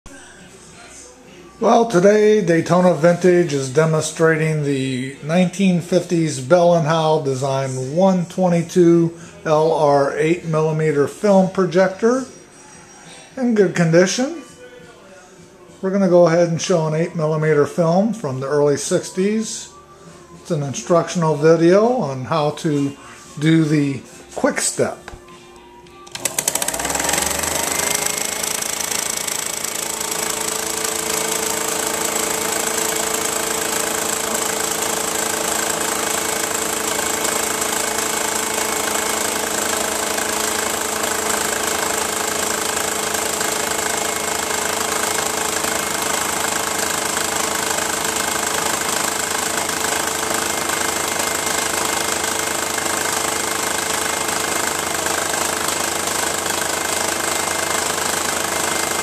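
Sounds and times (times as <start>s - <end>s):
film projector running: 26.0s - 59.0s.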